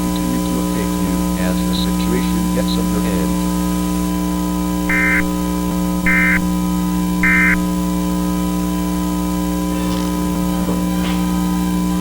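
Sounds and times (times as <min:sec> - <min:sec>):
loud electrical hum: 0:00.0 - 0:12.0
warbling digital data tones: 0:04.9 - 0:05.4, 0:06.1 - 0:06.6, 0:07.2 - 0:07.8.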